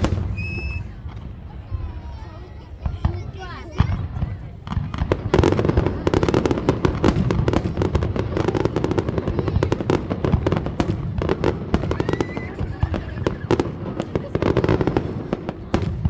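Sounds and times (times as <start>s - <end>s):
faint firework whistle: 0.0s - 1.2s, 11.8s - 13.6s
firework bangs and crackles: 0.0s - 16.0s.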